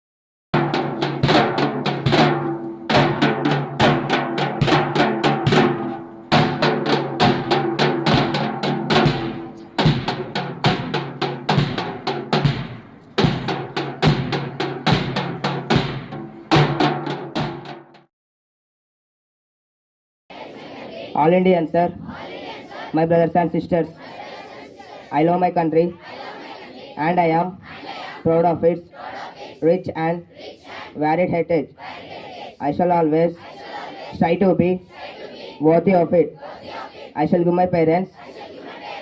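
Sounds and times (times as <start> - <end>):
rapid drum strokes: 0.6 - 18.1.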